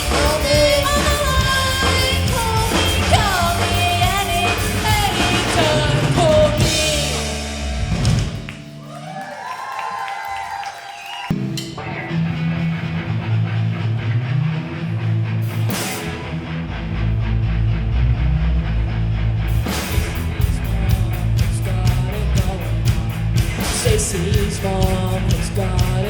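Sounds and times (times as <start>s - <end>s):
bass guitar: 0.0s - 9.9s, 11.2s - 26.0s
drum kit beat: 0.0s - 10.0s, 19.5s - 26.0s.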